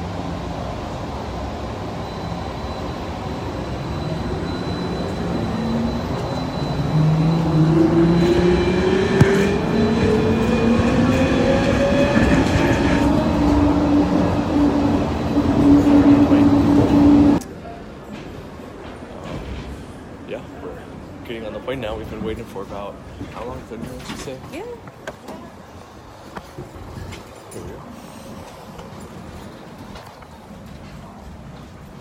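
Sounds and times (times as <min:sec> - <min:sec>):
electric tram drive whine: 0:00.0 - 0:17.4.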